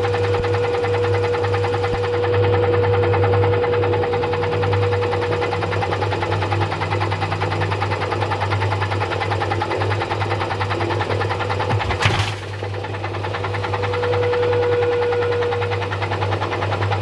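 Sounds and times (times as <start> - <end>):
washing machine motor hum: 10.9 - 13.6
washing machine rattle: 11.2 - 13.4.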